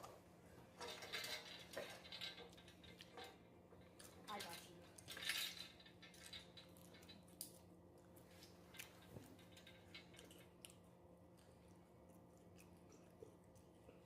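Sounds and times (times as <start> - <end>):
faint steady hum: 0.0 - 14.0
chewing crunchy chips: 10.0 - 14.0.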